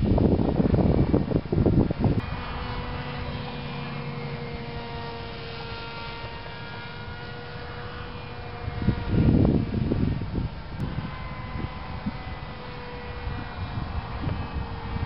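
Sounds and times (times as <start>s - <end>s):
electric motor and propeller whining: 0.0s - 15.0s
wind buffeting microphone: 0.0s - 15.0s.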